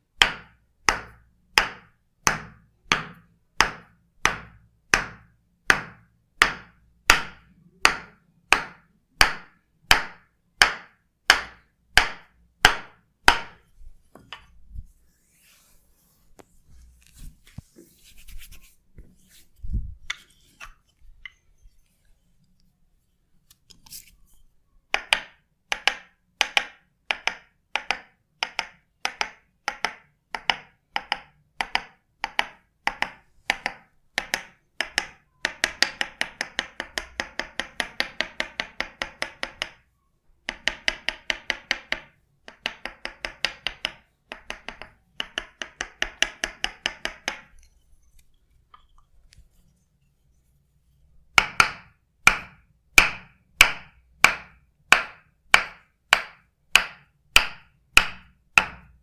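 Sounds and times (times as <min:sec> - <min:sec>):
percussive massage strikes: 0:00.2 - 0:13.6, 0:51.3 - 0:59.0.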